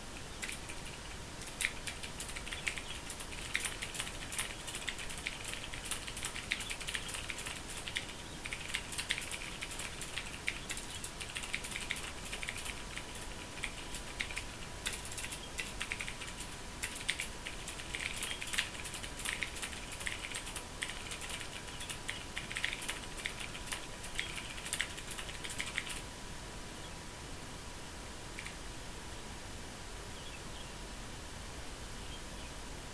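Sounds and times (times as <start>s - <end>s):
mechanical keyboard typing: 0.4s - 26.0s, 28.4s - 28.6s.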